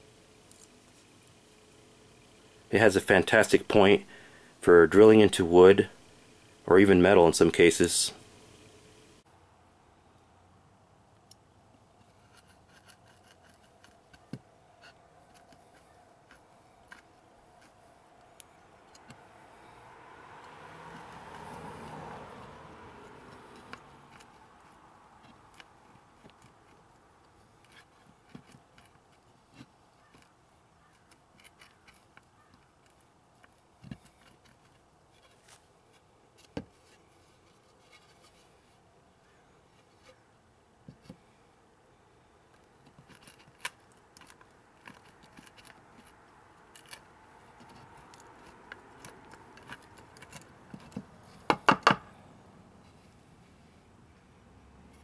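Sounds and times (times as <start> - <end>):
knife scraping: 12.0 - 14.0.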